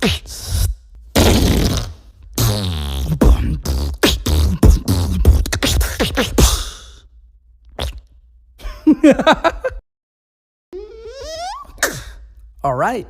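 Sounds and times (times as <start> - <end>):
beatboxed clicks and vocal tones: 0.0 - 8.2, 10.8 - 12.6.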